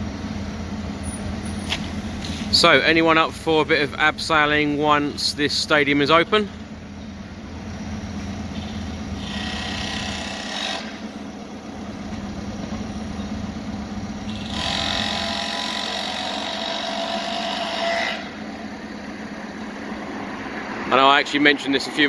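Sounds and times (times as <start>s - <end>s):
low engine hum: 0.0s - 9.6s, 11.0s - 14.6s, 18.3s - 22.0s
higher machine noise: 0.0s - 22.0s.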